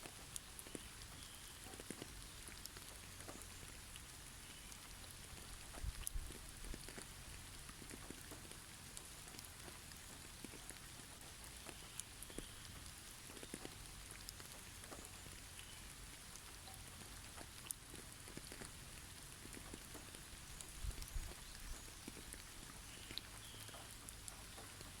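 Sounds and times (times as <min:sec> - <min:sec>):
faint steady hiss: 0:00.0 - 0:25.0.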